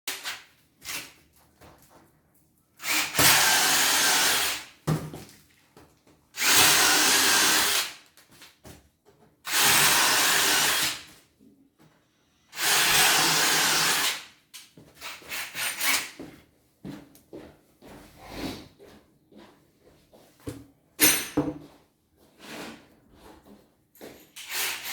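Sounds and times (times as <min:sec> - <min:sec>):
power drill running: 0:02.8 - 0:04.6, 0:06.4 - 0:08.0, 0:09.5 - 0:11.0, 0:12.6 - 0:14.2, 0:24.4 - 0:24.9.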